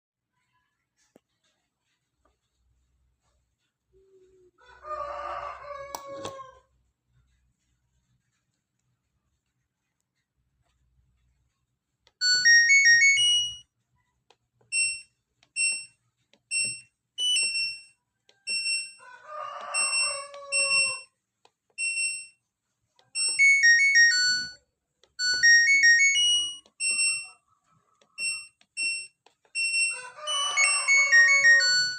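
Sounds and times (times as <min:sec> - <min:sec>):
control panel beeping: 0:14.6 - 0:19.0, 0:25.2 - 0:27.4, 0:28.0 - 0:31.9.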